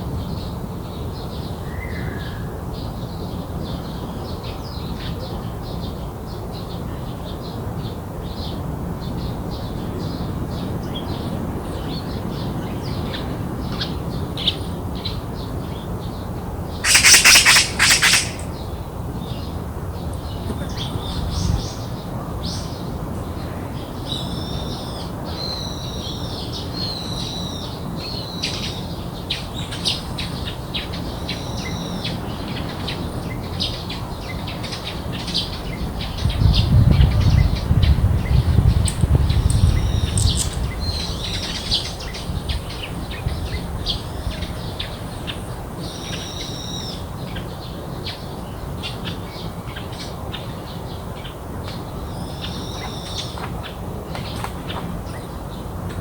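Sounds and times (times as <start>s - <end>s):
birds calling and chirping: 16.8s - 19.5s, 38.2s - 48.2s.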